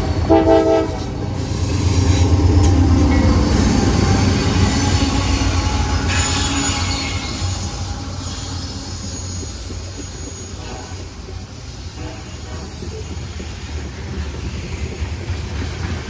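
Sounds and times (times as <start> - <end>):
freight train rumbling on rails: 0.0 - 16.0
high wheel squeal: 3.5 - 13.1.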